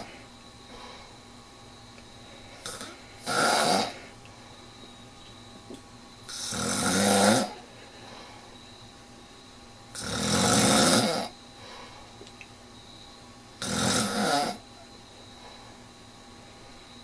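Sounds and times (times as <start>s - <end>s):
person snoring: 2.6s - 4.1s, 6.3s - 7.6s, 9.9s - 11.3s, 13.6s - 14.6s.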